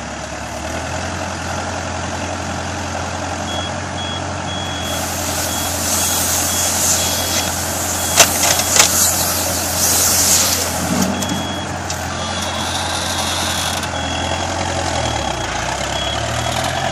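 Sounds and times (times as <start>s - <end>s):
machinery engine hum: 0.0s - 16.9s
high beep: 3.5s - 14.4s, 15.2s - 16.6s.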